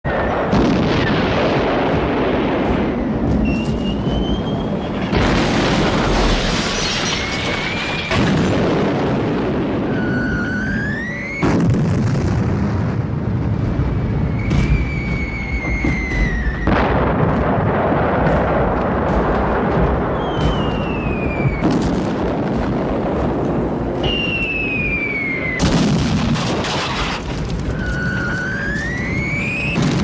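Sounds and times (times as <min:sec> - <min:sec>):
rumble of blasts: 0:00.0 - 0:30.0
loud boom: 0:00.1 - 0:30.0
falling bomb whistle: 0:02.9 - 0:05.1, 0:09.8 - 0:12.0, 0:13.8 - 0:17.1, 0:20.1 - 0:21.9, 0:24.0 - 0:26.2, 0:27.0 - 0:30.0.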